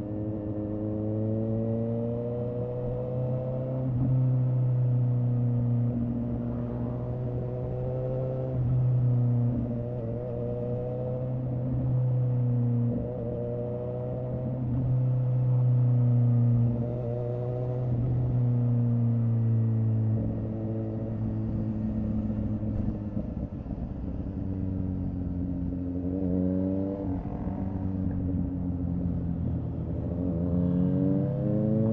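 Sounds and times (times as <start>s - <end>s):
motorcycle engine revving: 24.6s - 31.9s.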